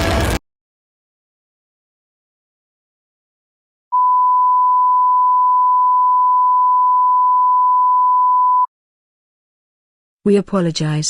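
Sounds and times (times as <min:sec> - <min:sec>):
steady test tone beep: 0:03.9 - 0:08.7.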